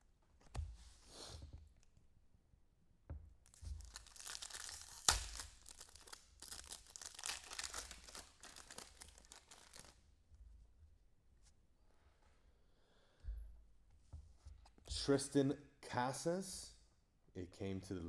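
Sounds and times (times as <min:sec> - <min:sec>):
foil wrapper crinkling: 0:03.5 - 0:10.0.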